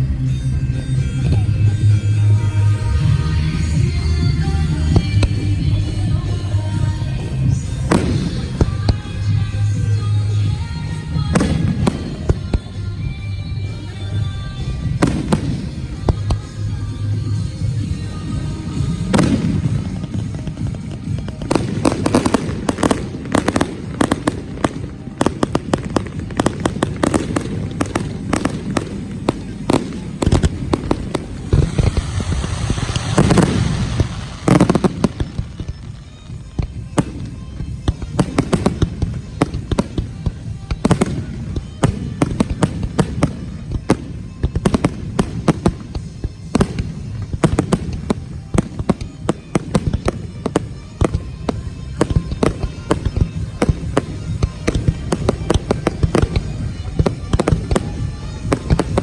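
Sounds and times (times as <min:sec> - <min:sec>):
firework hiss: 0:13.8 - 0:59.0
firework shells bursting: 0:17.5 - 0:59.0.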